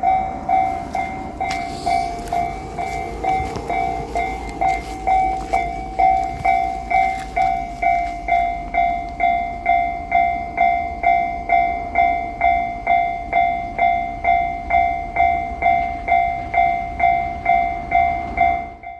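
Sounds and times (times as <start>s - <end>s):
passing train rumble: 0.0s - 18.9s
railway crossing alarm ringing: 0.0s - 18.9s.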